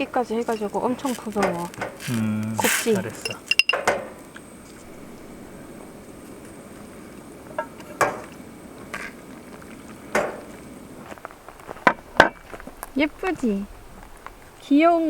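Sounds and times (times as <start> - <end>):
utensils clinking against pots: 0.4 - 4.0.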